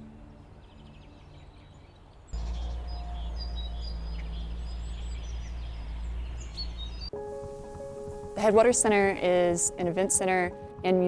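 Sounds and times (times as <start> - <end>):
birds chirping: 0.0 - 7.1
soft background music: 0.0 - 11.0
low outdoor rumble: 2.4 - 7.1.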